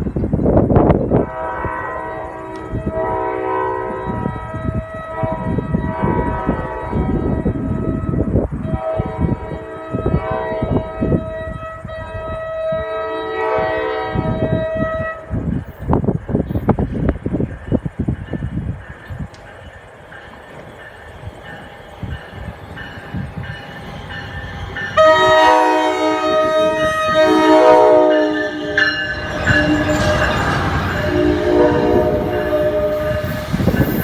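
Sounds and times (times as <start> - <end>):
low rumbling train noise: 0.0 - 34.0
train air horn blasts: 1.1 - 15.5, 24.8 - 34.0.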